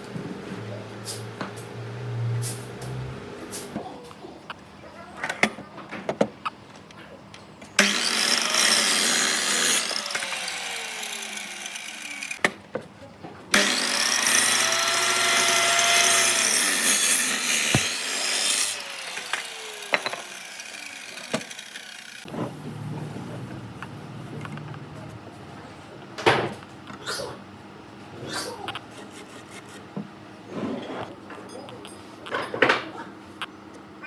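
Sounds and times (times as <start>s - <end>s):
power tool cutting hardwood: 7.8s - 12.4s, 13.5s - 22.3s.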